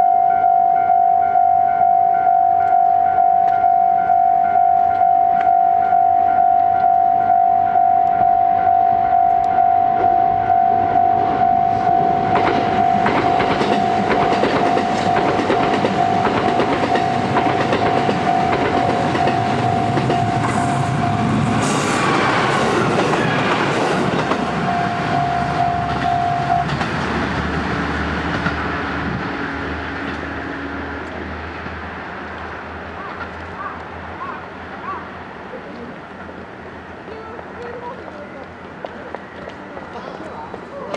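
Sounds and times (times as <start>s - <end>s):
level crossing warning bell: 0.0s - 21.5s, 24.1s - 26.8s
diesel train engines: 0.0s - 40.9s
wheels clattering over rail joints: 11.9s - 21.0s.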